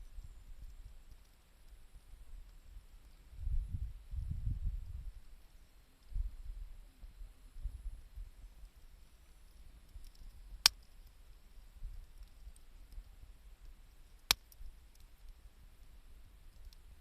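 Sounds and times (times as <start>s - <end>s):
campfire crackling: 0.1s - 3.4s, 8.0s - 17.0s.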